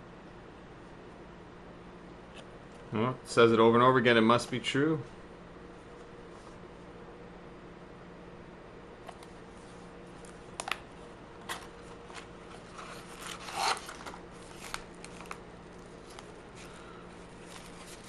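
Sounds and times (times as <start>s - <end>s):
packaging rustling: 11.4s - 18.0s.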